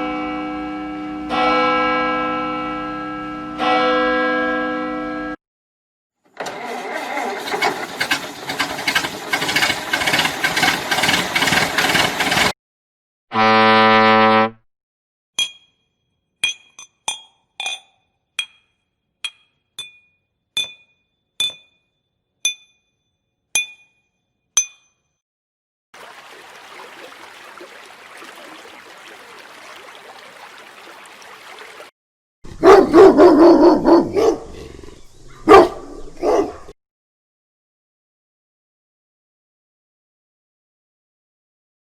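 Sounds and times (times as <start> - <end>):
dog barking: 32.5 - 34.7, 35.3 - 36.8.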